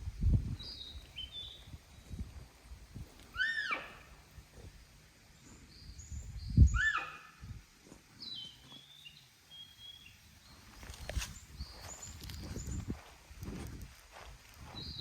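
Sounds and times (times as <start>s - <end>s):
small birds chirping: 0.5s - 2.4s, 3.2s - 13.1s, 14.6s - 15.0s
deer whistling call: 3.3s - 4.1s, 6.7s - 7.4s.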